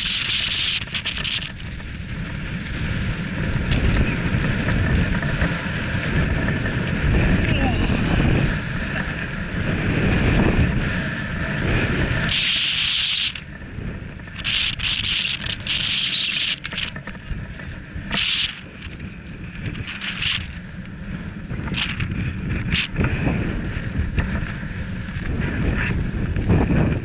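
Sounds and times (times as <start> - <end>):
bike tyres on gravel: 0.0 - 7.5
wind buffeting microphone: 0.0 - 12.6, 13.3 - 27.0
low rumble: 7.2 - 9.2.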